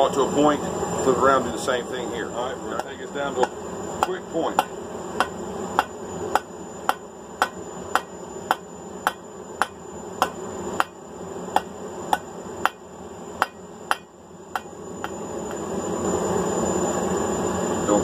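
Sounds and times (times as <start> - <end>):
hammer striking hot steel: 2.7 - 15.6.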